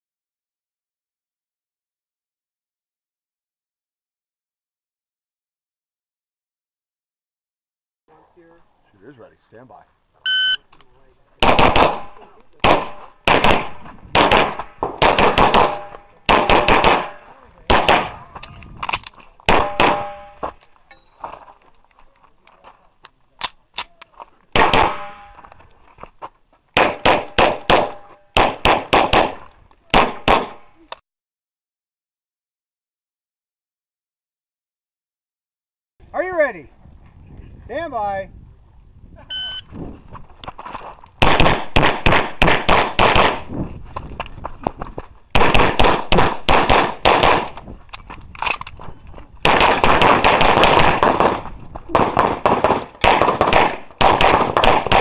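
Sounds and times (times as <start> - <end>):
pistol shots: 11.4 - 18.3, 18.9 - 20.4, 24.5 - 25.4, 26.8 - 30.7, 41.2 - 43.5, 45.3 - 47.6, 49.4 - 55.0.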